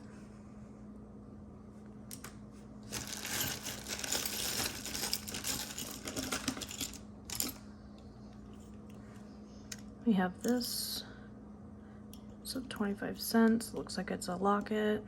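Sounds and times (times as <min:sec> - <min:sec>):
metal jewelry clinking: 0:02.9 - 0:07.6.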